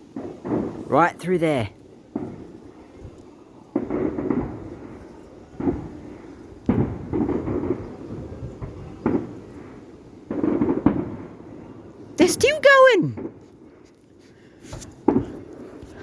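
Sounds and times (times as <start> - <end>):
distant fireworks booming: 3.8 - 9.7.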